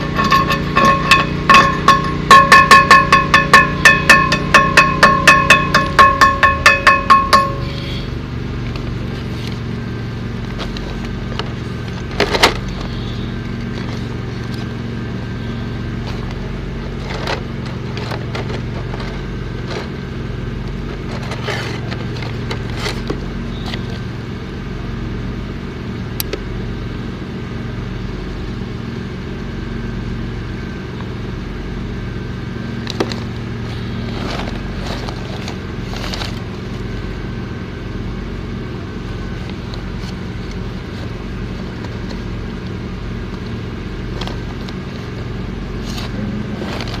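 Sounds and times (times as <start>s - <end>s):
welding machine engine humming: 0.0s - 16.9s.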